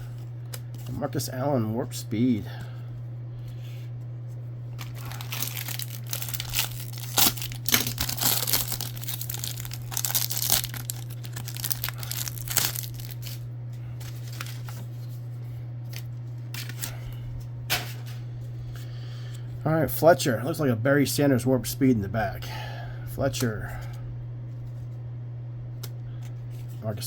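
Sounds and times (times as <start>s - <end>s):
wrapper tearing and crinkling: 4.8s - 13.4s, 14.0s - 14.8s
cards rustling and clicking: 4.8s - 15.1s, 15.9s - 17.2s.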